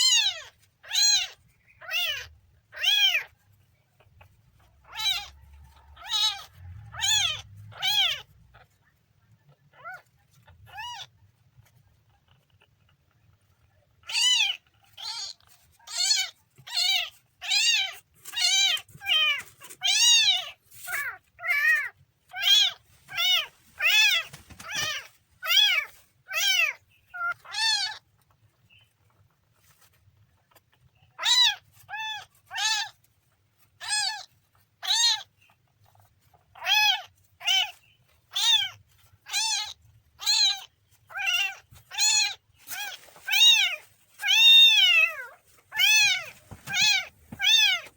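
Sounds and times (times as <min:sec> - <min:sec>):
kitten meowing: 0:00.0 - 0:03.3, 0:04.8 - 0:05.4, 0:06.0 - 0:08.3, 0:10.7 - 0:11.1, 0:14.0 - 0:28.0, 0:31.2 - 0:33.0, 0:33.8 - 0:35.3, 0:36.6 - 0:47.9.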